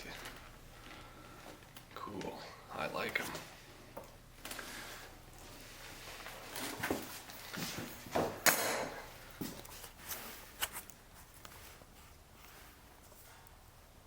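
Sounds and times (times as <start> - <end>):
decoys being handled: 9.2 - 14.0.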